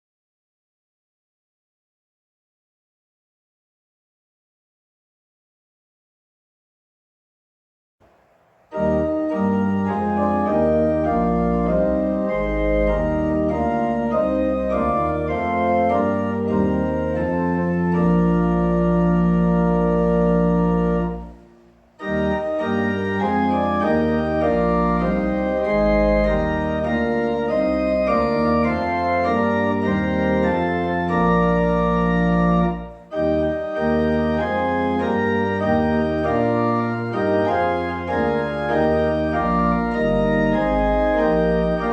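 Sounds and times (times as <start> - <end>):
organ music: 8.7 - 41.9.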